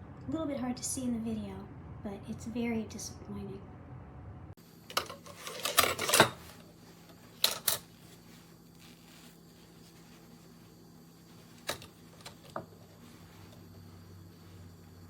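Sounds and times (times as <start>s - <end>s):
kitchen knives clicking and clattering: 4.9s - 6.5s, 7.4s - 7.8s.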